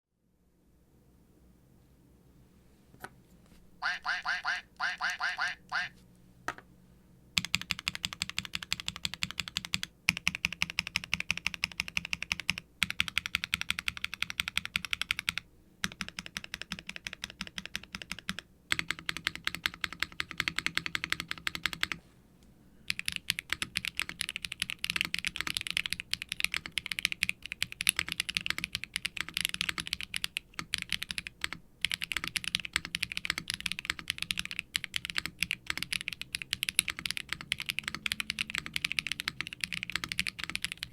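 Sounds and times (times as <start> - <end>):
fast typing on mechanical keyboard: 7.4 - 22.0, 22.9 - 40.9.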